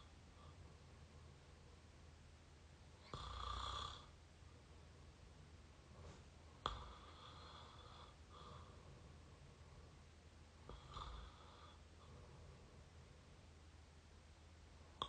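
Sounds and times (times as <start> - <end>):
person snoring: 3.0 - 4.1.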